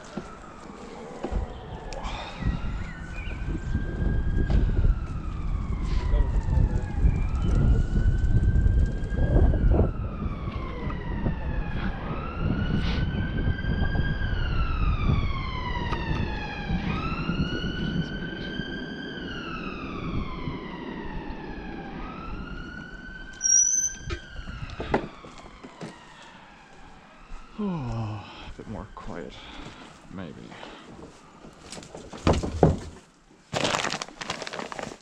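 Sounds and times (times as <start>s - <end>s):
emergency siren wailing: 0.0s - 32.1s.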